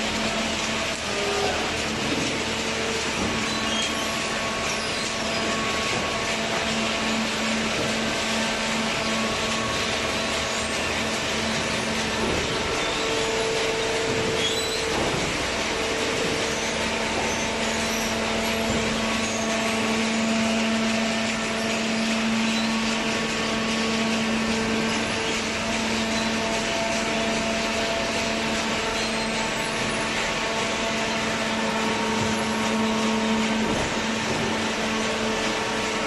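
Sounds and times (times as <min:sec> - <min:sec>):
hydraulic baler humming and whining: 0:00.0 - 0:36.0.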